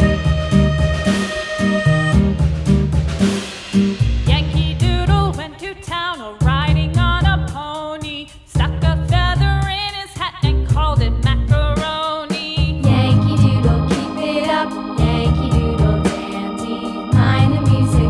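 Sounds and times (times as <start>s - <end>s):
wavering melody: 0.0s - 2.4s, 12.8s - 18.0s
pulsing bass: 0.0s - 5.4s, 6.4s - 7.6s, 8.6s - 9.8s, 10.4s - 11.8s, 12.6s - 18.0s.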